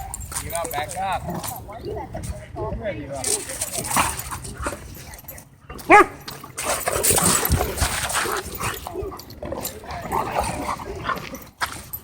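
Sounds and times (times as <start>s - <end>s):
dogs wrestling and whining: 0.0s - 2.6s, 3.2s - 12.0s
dog yelping: 5.8s - 6.2s.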